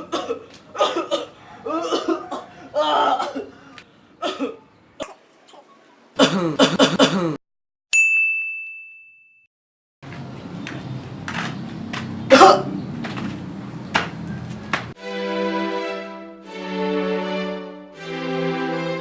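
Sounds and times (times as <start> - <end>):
bright ding: 8.0 - 9.5
music bed: 15.0 - 19.0.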